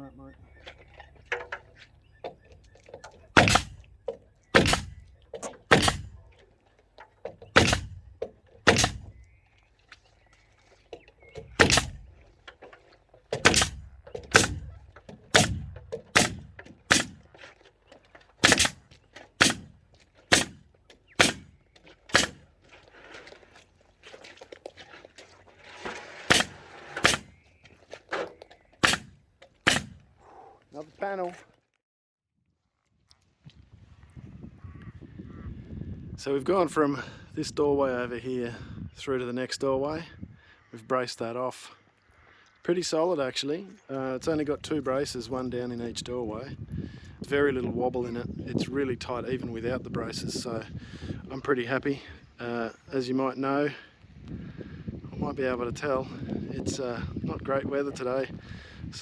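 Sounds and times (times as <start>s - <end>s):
heavy hammer blows: 3.4s - 3.9s, 4.6s - 5.1s, 5.7s - 6.3s, 7.6s - 8.1s, 8.7s - 9.2s, 11.5s - 12.1s, 13.4s - 17.3s, 18.4s - 18.8s, 19.4s - 20.6s, 21.2s - 21.5s, 22.1s - 22.4s, 26.3s - 27.4s, 28.8s - 30.0s.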